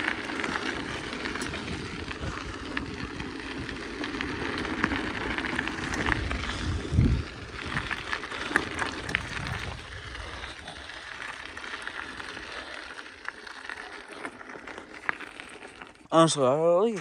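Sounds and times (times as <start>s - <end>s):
bike rattling clicks: 0.0s - 16.1s
bicycle tyres rolling on tarmac: 0.0s - 17.0s
wind on microphone: 0.7s - 10.9s.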